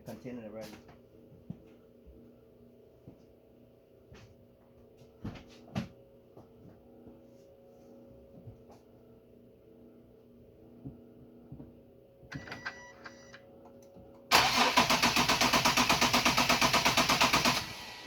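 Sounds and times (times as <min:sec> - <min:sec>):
starter cranking engine: 0:14.3 - 0:18.0.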